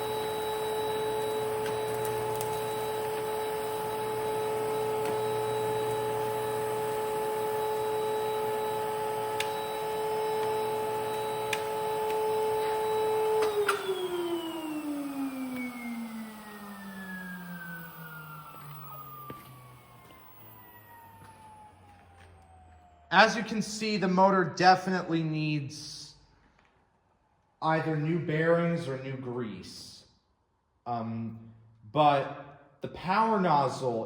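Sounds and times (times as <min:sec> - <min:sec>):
vacuum motor whining: 0:00.0 - 0:23.3.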